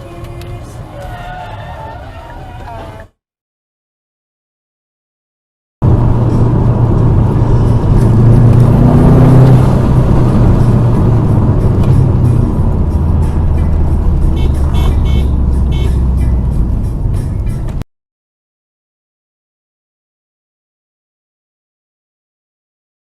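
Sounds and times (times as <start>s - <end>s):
car engine and road rumble: 0.0s - 3.0s, 5.8s - 17.8s
music playing: 5.9s - 17.8s.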